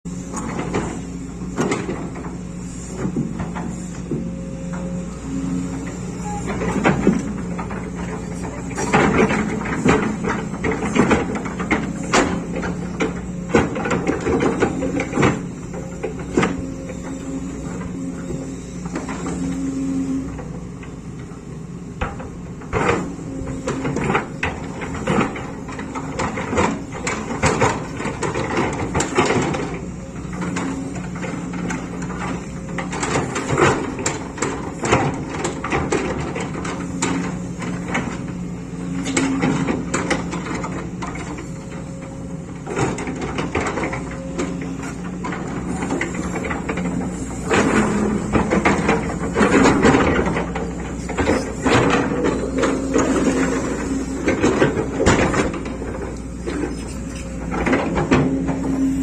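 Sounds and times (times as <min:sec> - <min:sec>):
excavator diesel engine running: 0:00.1 - 0:59.0.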